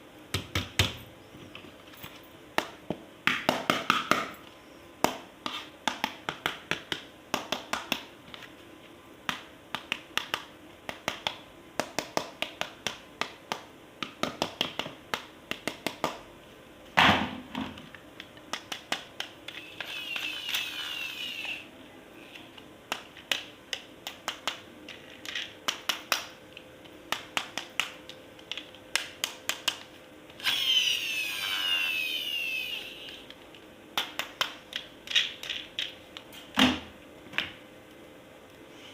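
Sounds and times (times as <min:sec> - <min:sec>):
high whirring: 0:30.4 - 0:33.2.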